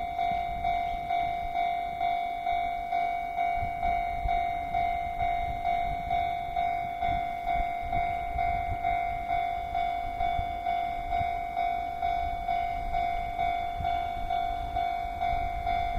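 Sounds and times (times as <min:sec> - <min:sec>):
level crossing bell ringing: 0:00.0 - 0:15.9
wind buffeting microphone: 0:00.0 - 0:15.9.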